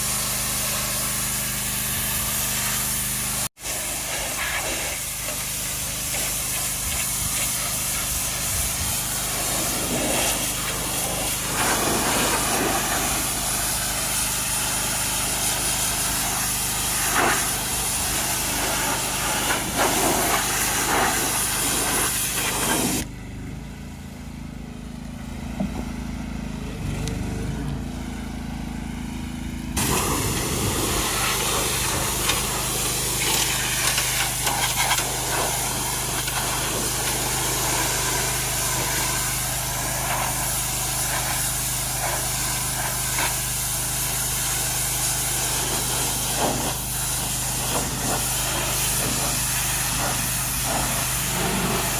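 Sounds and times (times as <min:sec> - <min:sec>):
pressure washer spray hissing: 0:00.0 - 0:23.1, 0:29.8 - 0:51.9
motor humming: 0:25.2 - 0:40.4.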